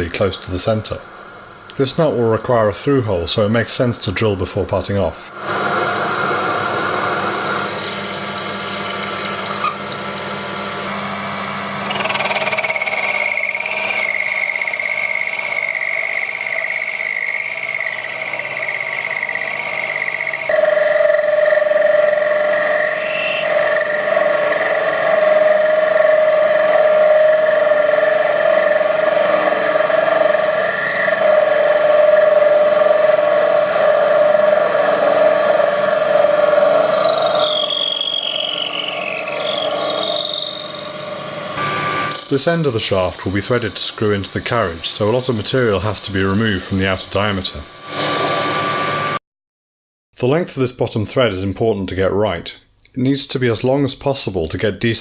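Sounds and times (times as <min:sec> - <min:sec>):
lathe machine whine: 0:05.3 - 0:49.2.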